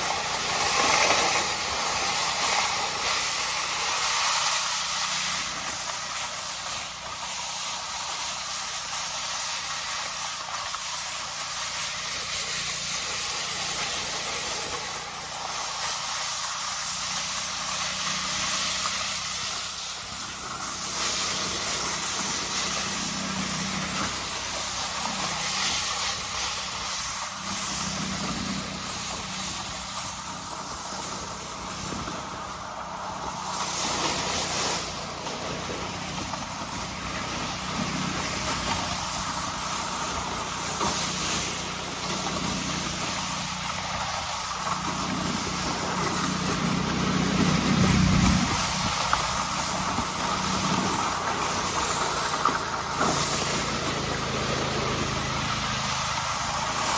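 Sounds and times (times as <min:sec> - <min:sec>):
engine drone: 0:00.0 - 0:56.9
road hiss: 0:00.0 - 0:56.9.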